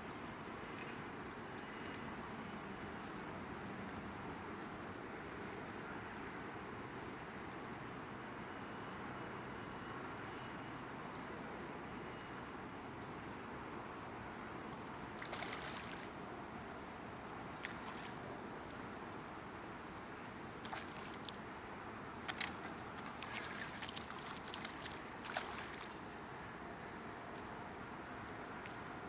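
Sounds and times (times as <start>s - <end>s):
sea water washing on shore: 22.3s - 26.0s.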